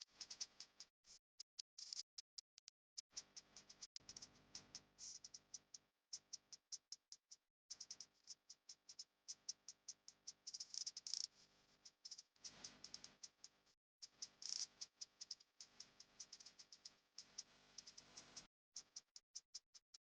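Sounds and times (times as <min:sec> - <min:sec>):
faint clicking and rattling: 0:07.7 - 0:13.5.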